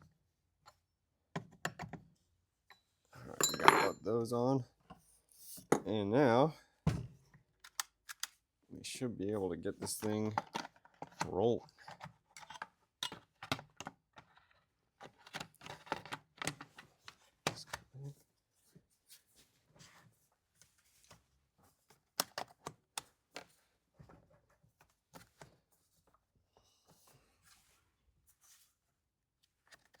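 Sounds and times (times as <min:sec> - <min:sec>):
plastic and metal parts clicking: 0:07.6 - 0:08.4.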